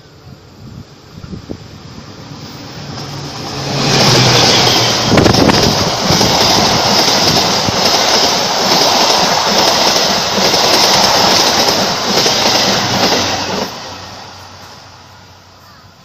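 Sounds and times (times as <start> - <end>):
train wheels clickety-clack: 2.6 - 14.8.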